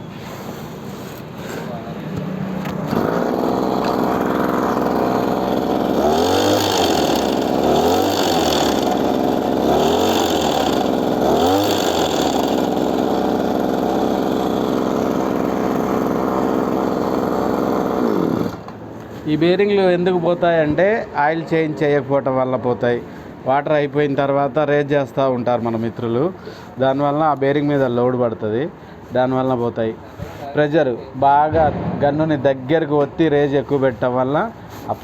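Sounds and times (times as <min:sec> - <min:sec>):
small engine driving spray pump: 0:00.0 - 0:19.4.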